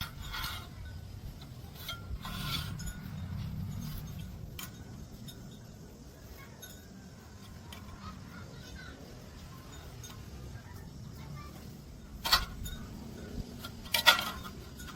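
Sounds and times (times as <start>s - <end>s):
low rumble: 0.0s - 6.0s
metallic clinks and knocks: 0.0s - 14.9s.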